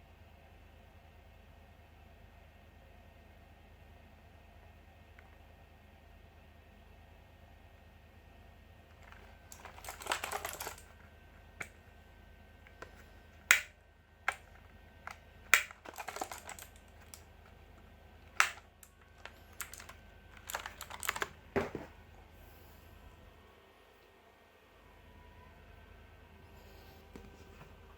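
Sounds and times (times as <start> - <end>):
mechanical keyboard key clicks: 9.0 - 10.8, 13.5 - 13.7, 15.1 - 17.2, 18.3 - 21.3.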